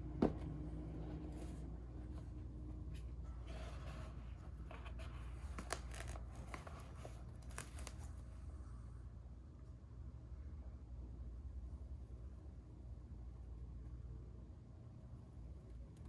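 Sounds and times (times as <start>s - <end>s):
low steady hum: 0.0s - 16.0s
packaging rustling: 3.8s - 8.2s.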